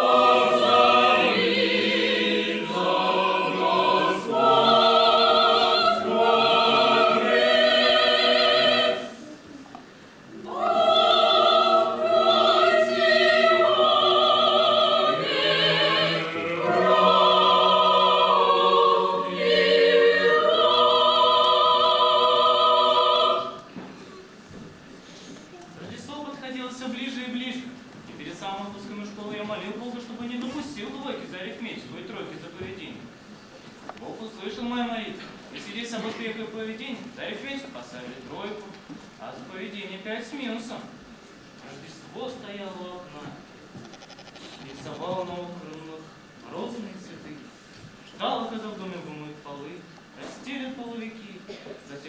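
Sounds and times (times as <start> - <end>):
choir singing held chords: 0.0 - 9.4, 10.2 - 24.0.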